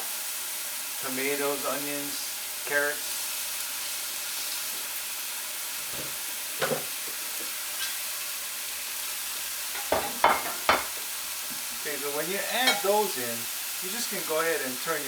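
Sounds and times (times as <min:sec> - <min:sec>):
food sizzling in hot oil: 0:00.0 - 0:15.0
stirring utensil knocks: 0:09.8 - 0:11.0.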